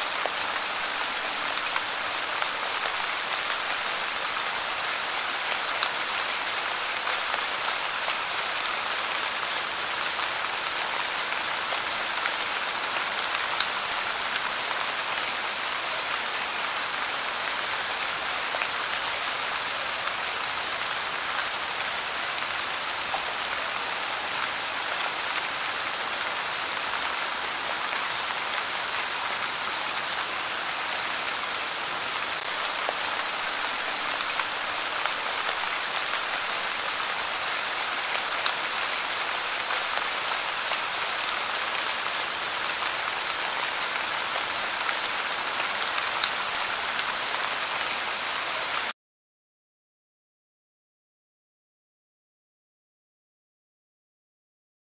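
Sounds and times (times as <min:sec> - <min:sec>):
light rain falling: 0:00.0 - 0:48.9.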